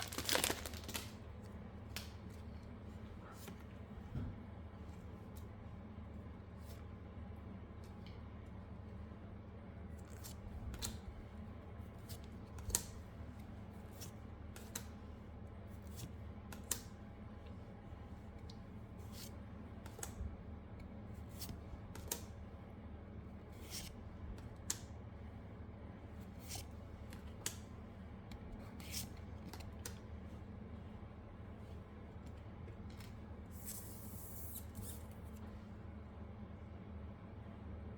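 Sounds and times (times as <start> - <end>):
cards snapping and flicking: 0.0 - 1.2, 16.5 - 17.0
steady low hum: 0.0 - 37.9.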